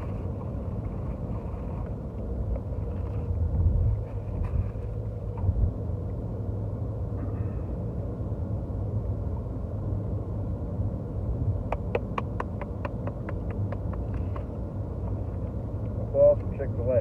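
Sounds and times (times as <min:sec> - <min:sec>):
car cabin rumble: 0:11.6 - 0:16.9
sharp ticks: 0:11.7 - 0:14.5.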